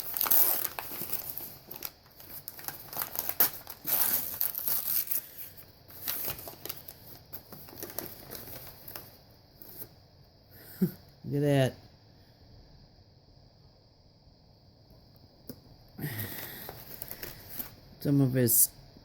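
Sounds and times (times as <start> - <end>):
packing material crinkling: 0.0 - 9.8, 16.2 - 17.8
short tearing sounds: 3.2 - 5.2.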